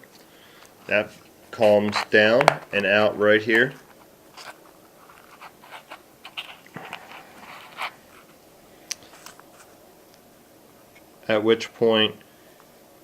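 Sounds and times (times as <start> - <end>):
small parts scratching and clicking: 2.8 - 8.3.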